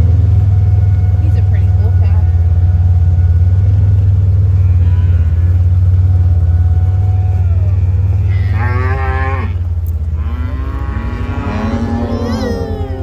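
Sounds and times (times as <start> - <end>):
vehicle engine idling: 0.0 - 13.0
cows mooing: 3.3 - 13.0.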